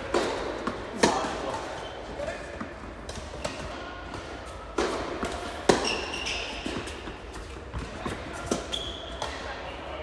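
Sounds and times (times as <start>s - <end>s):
tennis ball hit by racket: 0.0s - 1.6s, 2.6s - 9.4s
tennis ball bouncing on court: 2.5s - 9.4s.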